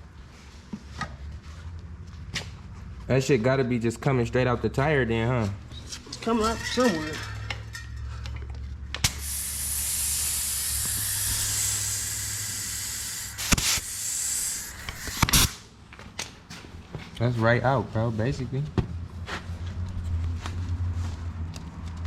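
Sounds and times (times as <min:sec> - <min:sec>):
pressurized gas hissing: 0:09.0 - 0:15.6.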